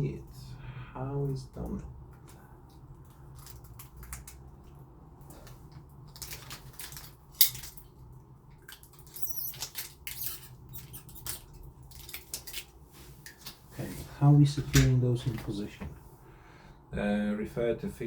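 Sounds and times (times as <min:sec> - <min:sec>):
clicks and scrapes of lock hardware: 0:05.4 - 0:07.9, 0:08.6 - 0:12.7.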